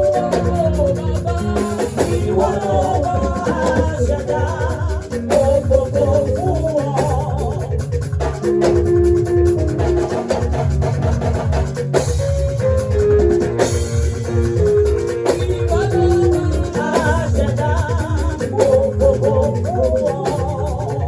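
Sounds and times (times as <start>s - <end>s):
people singing: 0.0s - 7.8s, 15.1s - 21.0s
band playing dance rhythm: 0.0s - 21.0s.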